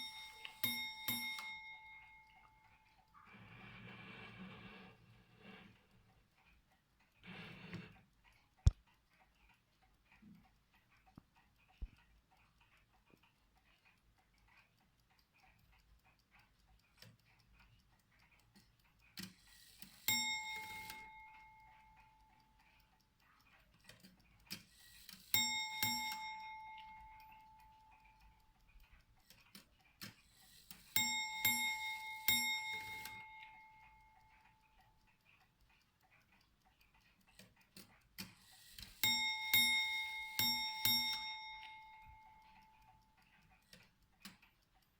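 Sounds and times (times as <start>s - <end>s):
clock bell striking: 0.0s - 2.7s, 20.1s - 21.9s, 25.4s - 27.6s, 31.0s - 34.0s, 39.0s - 42.5s
clock ticking: 0.0s - 44.9s.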